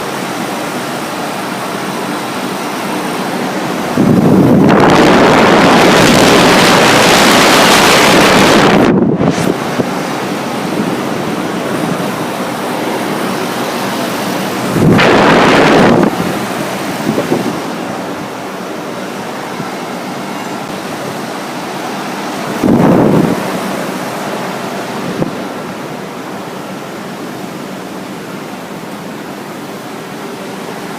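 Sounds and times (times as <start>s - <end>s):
condenser fans rushing airflow: 0.0s - 30.9s
air blowing across microphone: 3.7s - 12.2s, 14.5s - 18.2s.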